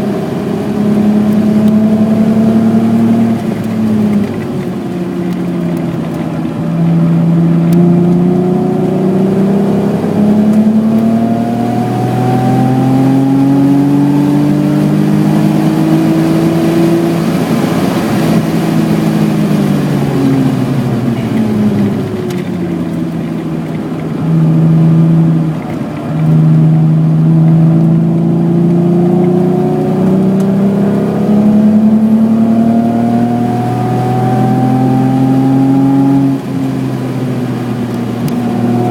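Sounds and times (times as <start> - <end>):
car engine accelerating: 0.0 - 38.9.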